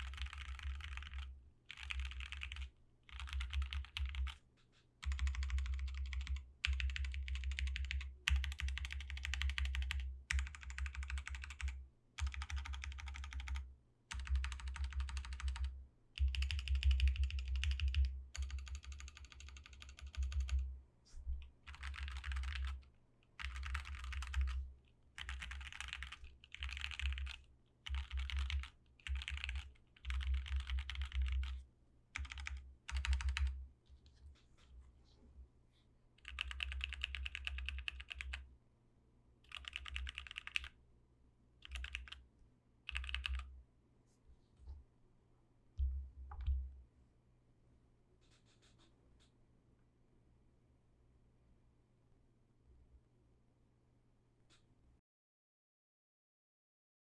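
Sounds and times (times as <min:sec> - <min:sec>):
mechanical keyboard typing: 0:00.0 - 0:04.4, 0:05.0 - 0:20.6, 0:21.7 - 0:24.6, 0:25.2 - 0:31.6, 0:32.2 - 0:33.6, 0:36.2 - 0:38.4, 0:39.5 - 0:40.7, 0:41.6 - 0:42.2, 0:42.9 - 0:43.5.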